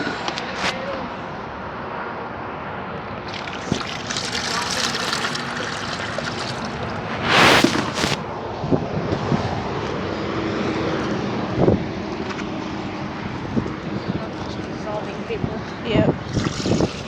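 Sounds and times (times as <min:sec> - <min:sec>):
road traffic: 0:00.0 - 0:17.0
wind: 0:00.0 - 0:17.0
short loud hisses: 0:06.9 - 0:08.2.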